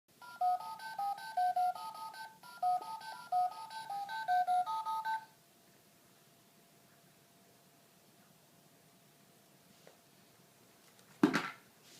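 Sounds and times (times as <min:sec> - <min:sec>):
telephone keypad touch tones: 0:00.2 - 0:05.3.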